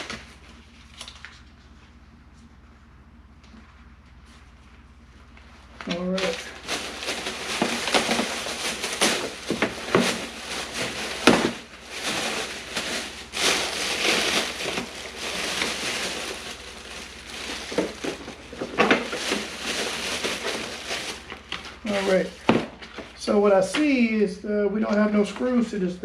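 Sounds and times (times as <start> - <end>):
plastic and foam crinkling: 3.6 - 23.3.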